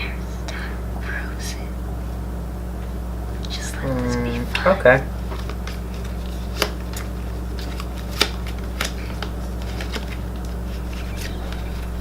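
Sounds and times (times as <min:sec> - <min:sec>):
low hum: 0:00.0 - 0:12.0
playing cards clicking and snapping: 0:05.3 - 0:12.0.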